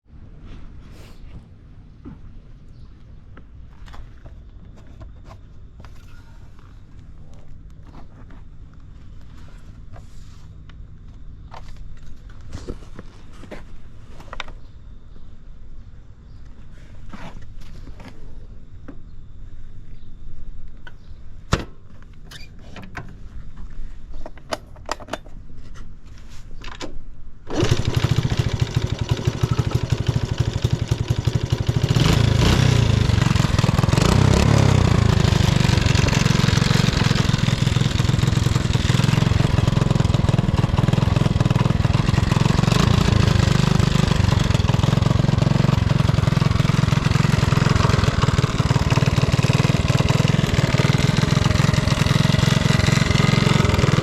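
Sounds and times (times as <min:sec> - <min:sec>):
motorcycle engine running: 0:27.6 - 0:54.0.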